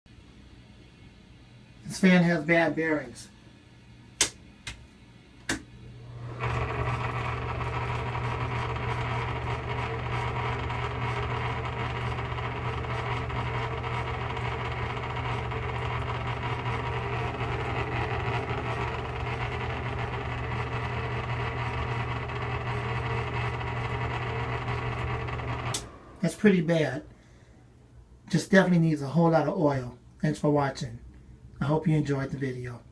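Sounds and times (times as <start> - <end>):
electric fan humming: 0.2 - 32.9
rough motor bearing noise: 6.1 - 27.1.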